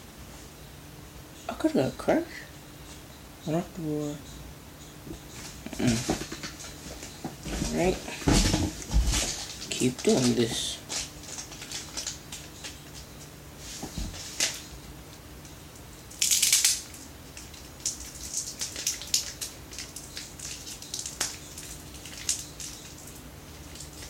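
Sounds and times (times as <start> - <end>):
packaging crinkling and rustling: 5.8 - 13.2, 16.2 - 24.0.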